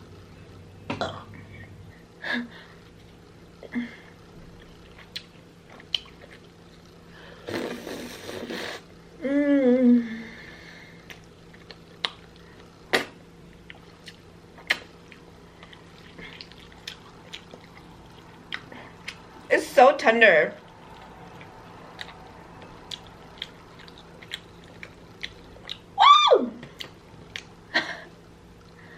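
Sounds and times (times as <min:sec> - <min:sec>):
loud burp: 0:00.9 - 0:01.3
chewing food: 0:04.5 - 0:07.1, 0:11.0 - 0:12.8, 0:13.5 - 0:19.5, 0:20.5 - 0:26.0, 0:26.6 - 0:27.6.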